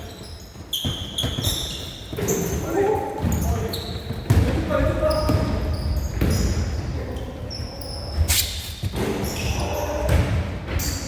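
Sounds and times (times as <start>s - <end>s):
shoe squeaks: 0.0s - 4.3s, 4.9s - 10.1s
basketball bouncing on gym floor: 0.2s - 6.9s, 8.8s - 11.0s.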